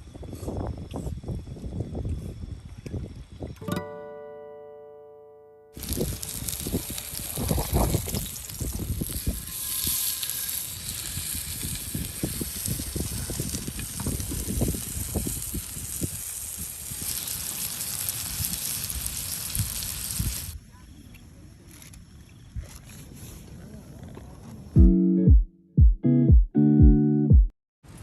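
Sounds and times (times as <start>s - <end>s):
strong wind gusting on microphone: 0.0s - 3.6s, 5.8s - 17.4s.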